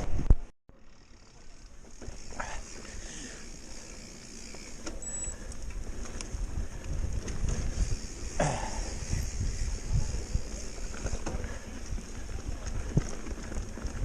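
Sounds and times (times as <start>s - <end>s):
bike rolling noise: 0.0s - 14.0s
wind rumble: 5.6s - 14.0s.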